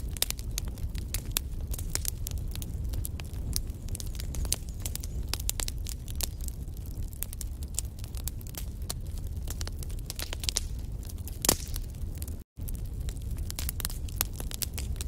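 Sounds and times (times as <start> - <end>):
fire crackling and popping: 0.0 - 15.0
low rumble of flames: 0.0 - 15.0.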